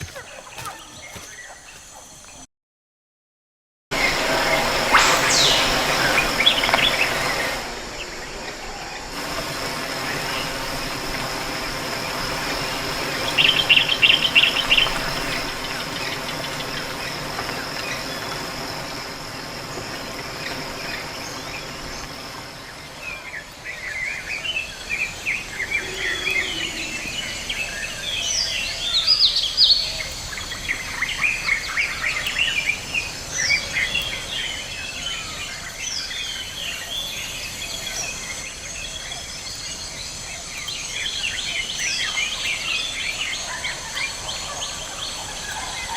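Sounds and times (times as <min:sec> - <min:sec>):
bird chirps and calls: 0:00.0 - 0:02.4, 0:25.0 - 0:37.5.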